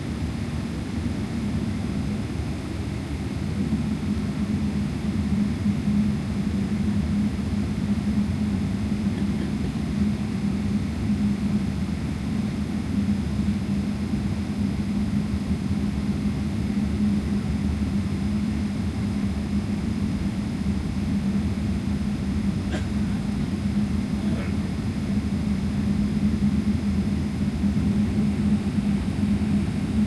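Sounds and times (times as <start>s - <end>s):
steady low hum: 3.2s - 30.0s
airplane cabin rumble: 18.7s - 30.0s.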